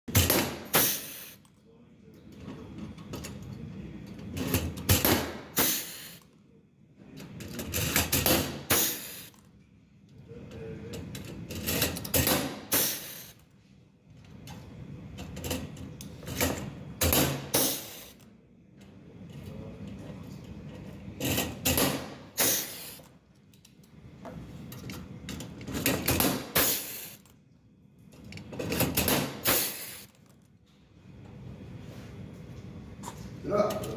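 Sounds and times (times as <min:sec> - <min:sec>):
rivet machine air rush: 0:00.1 - 0:01.5, 0:04.9 - 0:06.3, 0:07.7 - 0:09.4, 0:11.6 - 0:13.4, 0:17.0 - 0:18.2, 0:21.6 - 0:23.1, 0:25.7 - 0:27.3, 0:28.8 - 0:30.2
rivet machine sharp snaps: 0:21.8 - 0:23.0, 0:29.1 - 0:30.1.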